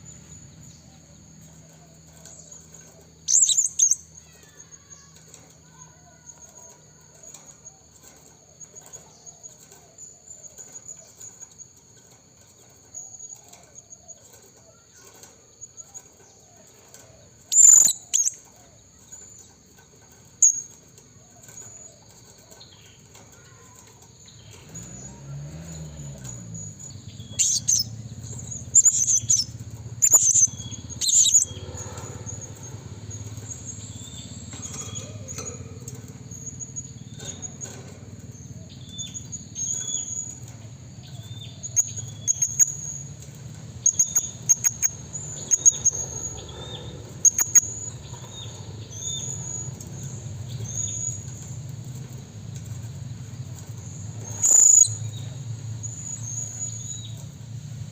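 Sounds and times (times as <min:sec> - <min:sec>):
parrot shrill calls: 0:28.7 - 0:31.5.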